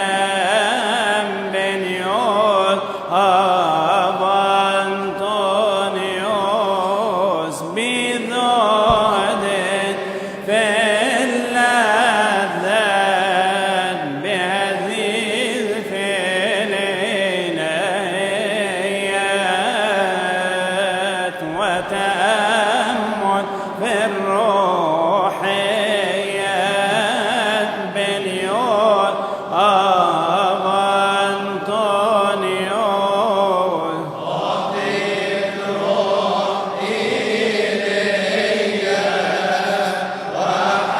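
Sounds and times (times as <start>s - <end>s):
man chanting: 0.0s - 40.9s
breaths: 2.8s - 3.2s, 10.0s - 10.5s, 23.4s - 23.8s, 29.1s - 29.6s.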